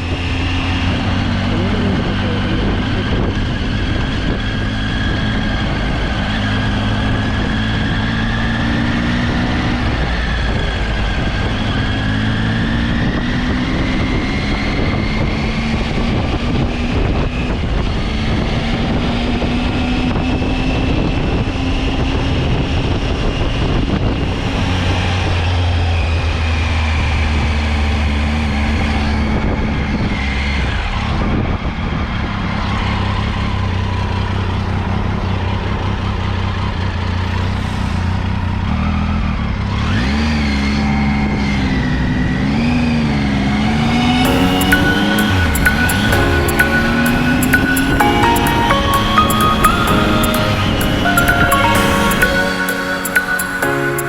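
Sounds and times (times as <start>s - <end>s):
wind rushing on microphone: 0.0s - 27.5s, 28.8s - 32.6s
motorcycle engine revving: 0.0s - 46.1s.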